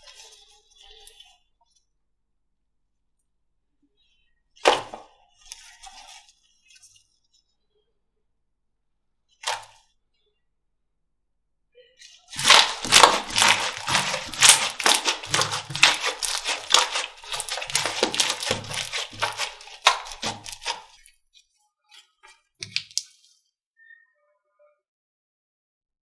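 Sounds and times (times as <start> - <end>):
slime squeezed by hand: 12.4 - 21.0, 22.6 - 23.2.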